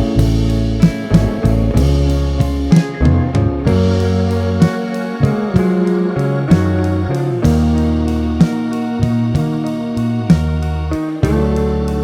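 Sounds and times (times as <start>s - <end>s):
guitar background music: 0.0s - 12.0s.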